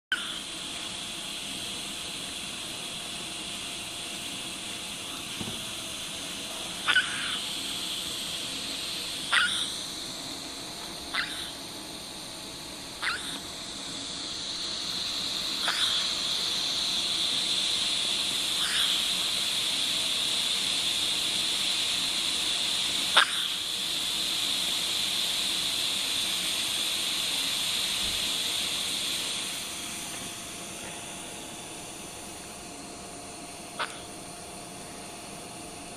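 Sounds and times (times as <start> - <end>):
steady hiss: 0.1 - 35.9
person hiccupping: 33.8 - 34.1.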